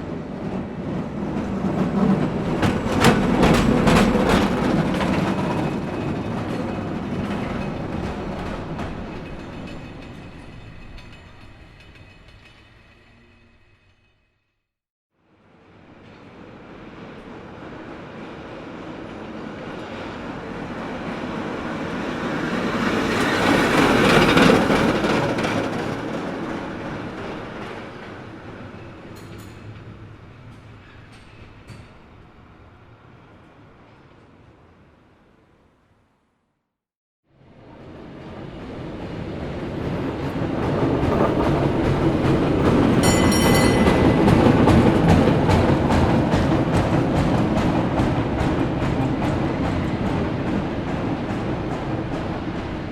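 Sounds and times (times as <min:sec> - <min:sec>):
cable car rumbling and clattering: 0:00.1 - 0:13.6, 0:21.3 - 0:32.3, 0:38.0 - 0:52.9.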